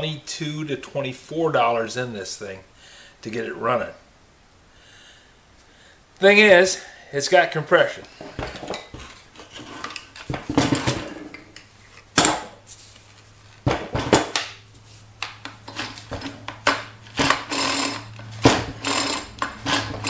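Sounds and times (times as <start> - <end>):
recoil starter pulls: 15.6 - 20.0.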